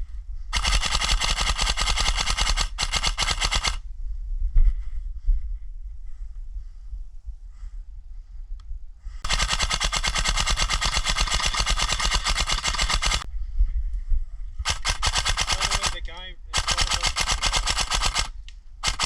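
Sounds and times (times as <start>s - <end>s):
airsoft rifle automatic fire: 0.6s - 3.8s, 9.2s - 13.2s, 14.6s - 19.0s.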